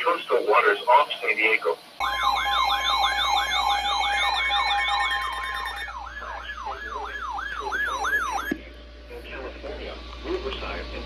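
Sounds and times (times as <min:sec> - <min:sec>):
electronic siren yelping: 0:02.0 - 0:08.5.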